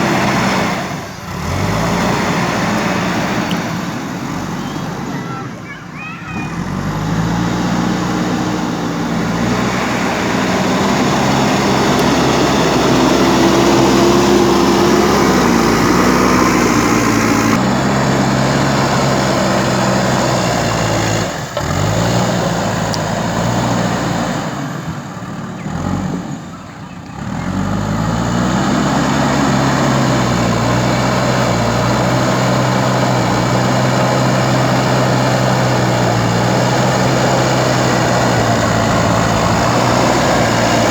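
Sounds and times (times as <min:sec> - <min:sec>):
diesel engine running hard: 0:00.0 - 0:40.9.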